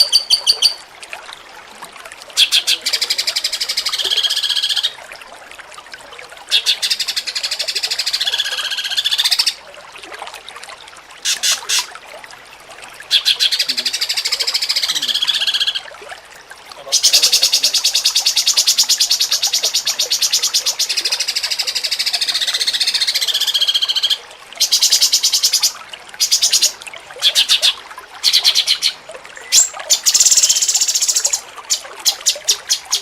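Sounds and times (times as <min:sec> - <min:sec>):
songbird trilling and warbling: 0:00.0 - 0:00.9, 0:02.4 - 0:05.0, 0:06.5 - 0:09.6, 0:11.2 - 0:11.9, 0:13.1 - 0:15.9, 0:16.8 - 0:33.0
short bird calls: 0:11.2 - 0:11.9.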